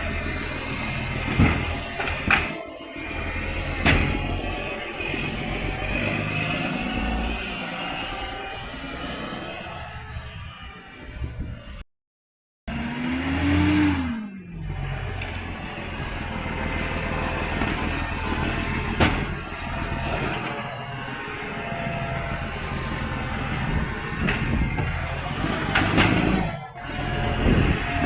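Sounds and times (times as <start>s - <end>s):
diesel engine with exhaust leak: 12.7s - 28.0s.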